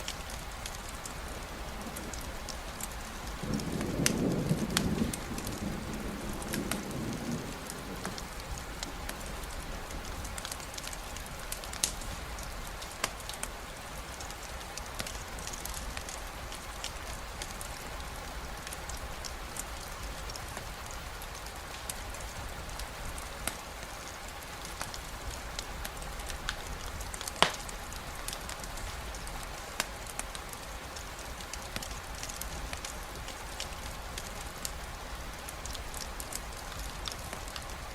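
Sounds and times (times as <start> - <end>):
sharp ticks of raindrops: 0.0 - 37.9
steady rain falling: 0.0 - 37.9
low rumble of thunder: 1.1 - 11.8.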